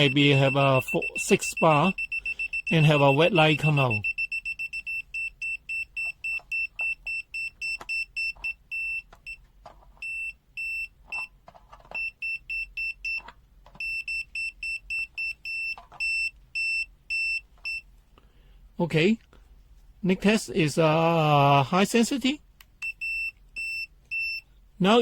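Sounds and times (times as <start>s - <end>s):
voltage tester beeping: 0.0s - 9.4s.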